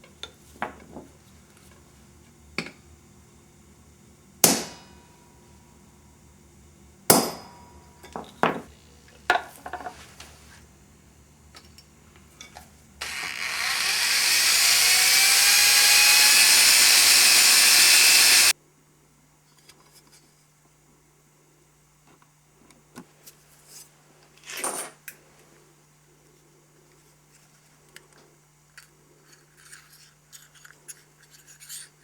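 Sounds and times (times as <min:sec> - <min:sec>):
electric drill grinding into metal: 0:13.0 - 0:18.5.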